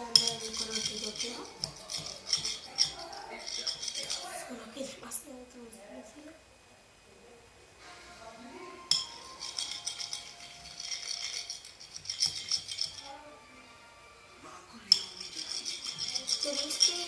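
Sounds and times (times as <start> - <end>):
utensil rattling in container: 0.1 - 4.4, 8.9 - 13.1, 14.9 - 17.0.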